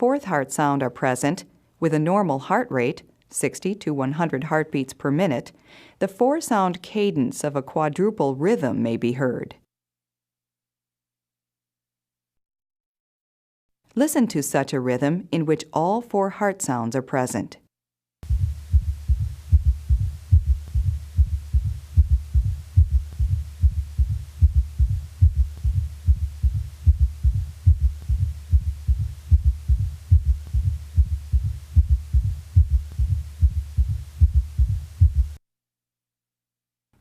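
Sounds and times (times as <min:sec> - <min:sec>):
heartbeat thuds: 0:18.2 - 0:35.4.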